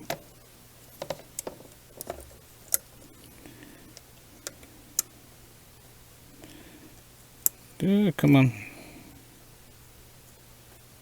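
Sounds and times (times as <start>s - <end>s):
screwdriver clicks and taps: 1.0s - 2.9s.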